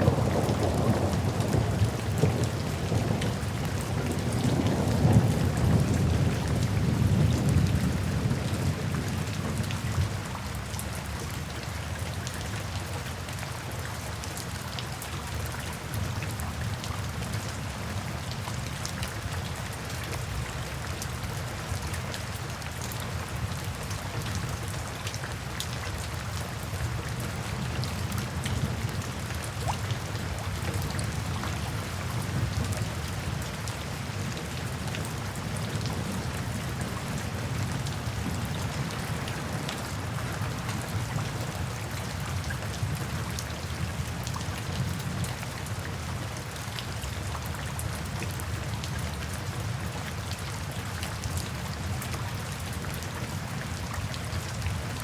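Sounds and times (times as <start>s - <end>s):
low rumble of thunder: 0.0s - 10.6s
rain falling: 0.0s - 55.0s
raindrops ticking on a surface: 0.0s - 55.0s.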